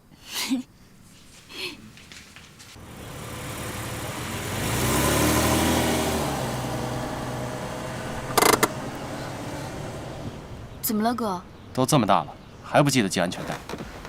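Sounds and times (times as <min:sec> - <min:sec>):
car engine driving off: 0:01.9 - 0:10.9
sharp clicks: 0:08.3 - 0:08.7.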